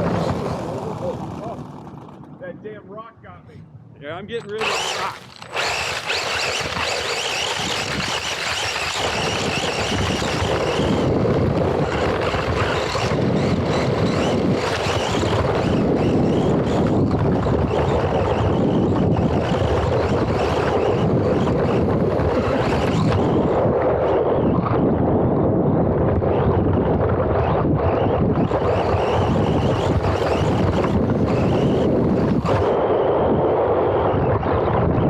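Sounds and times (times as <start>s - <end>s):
toy car chassis and tyres rumbling: 0.0s - 2.4s, 4.3s - 24.8s, 26.0s - 32.8s
wind on microphone: 0.0s - 2.4s, 4.6s - 35.0s
wavering high whine: 4.3s - 24.7s, 28.0s - 34.2s.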